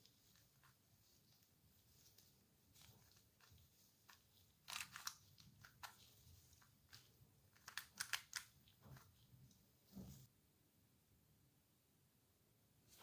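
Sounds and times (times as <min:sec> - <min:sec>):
plastic clicking and crunching: 0:06.9 - 0:09.1.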